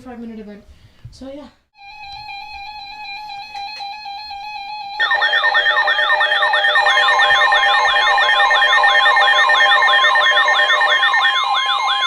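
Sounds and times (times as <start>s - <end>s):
siren-like warble: 5.0s - 12.0s
steady electronic tone: 5.0s - 12.0s.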